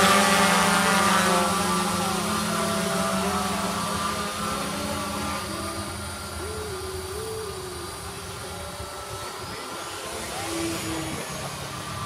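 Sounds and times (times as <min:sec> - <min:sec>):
drone motors whirring: 0:00.0 - 0:12.0.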